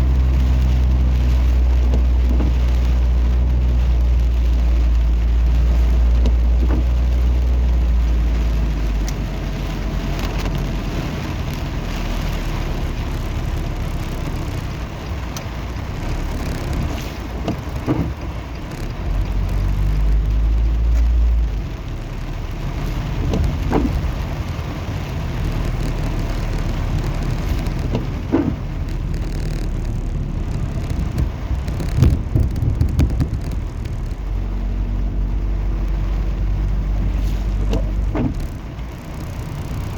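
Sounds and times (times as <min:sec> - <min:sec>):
rain falling: 0:00.0 - 0:39.9
wind buffeting microphone: 0:30.0 - 0:34.1.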